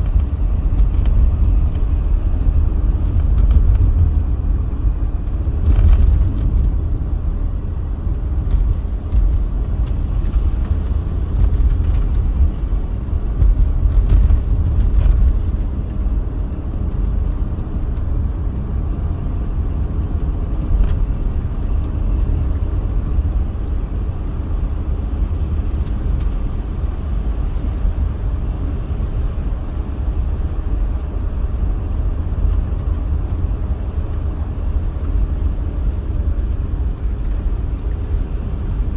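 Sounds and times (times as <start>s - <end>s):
car road and engine rumble: 0.0s - 38.9s.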